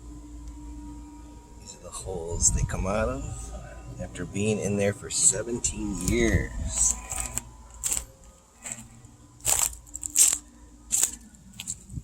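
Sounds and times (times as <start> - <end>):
short sharp crunches: 6.9 - 11.9.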